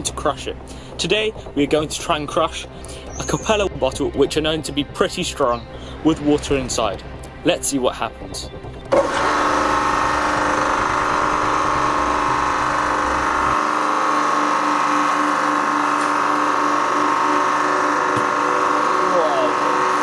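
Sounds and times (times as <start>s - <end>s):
hydraulic pump motor hum and whine: 0.0s - 7.5s, 8.4s - 20.0s
low rumble: 0.0s - 13.6s.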